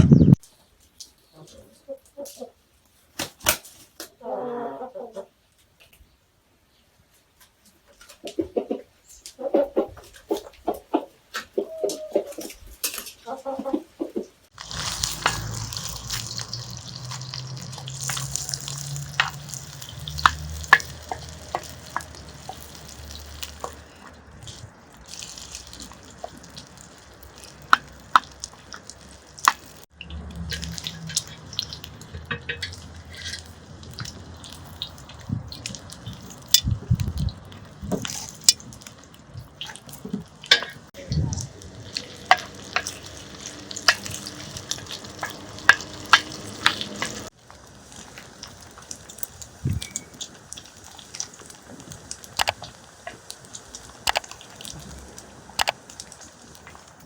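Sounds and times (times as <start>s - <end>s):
utensil stirring and scraping: 14.5s - 29.8s, 30.4s - 37.2s
food sizzling in a pan: 14.5s - 36.6s, 37.7s - 57.0s.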